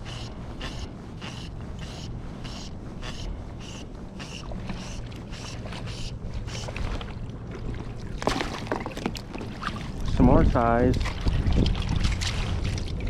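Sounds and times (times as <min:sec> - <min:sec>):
wind noise: 0:09.2 - 0:13.0.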